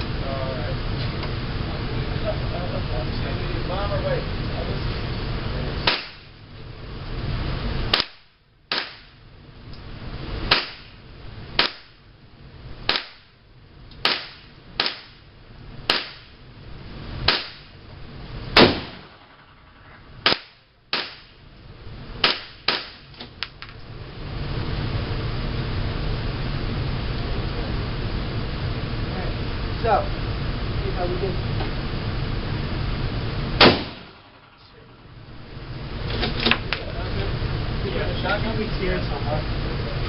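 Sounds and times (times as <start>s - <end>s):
gunshots: 5.8s - 6.3s, 7.9s - 9.2s, 10.5s - 11.0s, 11.6s - 11.9s, 14.0s - 15.2s, 15.9s - 16.3s, 17.3s - 17.7s, 18.6s - 21.4s, 22.2s - 23.0s, 33.6s - 34.6s.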